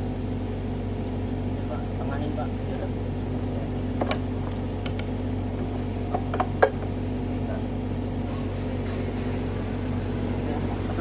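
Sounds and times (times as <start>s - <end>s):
diesel engine idling: 0.0s - 11.0s
steel parts clinking and knocking: 4.0s - 5.1s.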